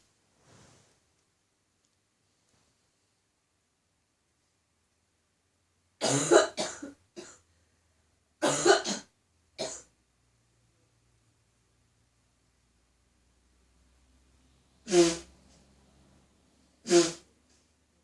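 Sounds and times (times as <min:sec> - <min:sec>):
woman coughing: 0:06.0 - 0:07.4, 0:08.4 - 0:09.9.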